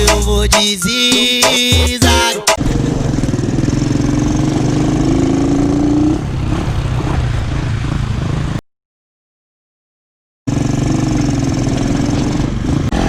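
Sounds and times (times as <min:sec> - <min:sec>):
motorcycle engine revving: 0:02.6 - 0:08.6, 0:10.5 - 0:13.0.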